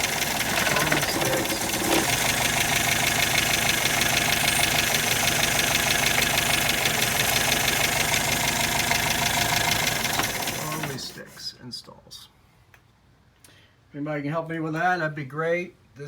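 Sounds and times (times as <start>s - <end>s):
car engine idling: 0.0s - 11.4s.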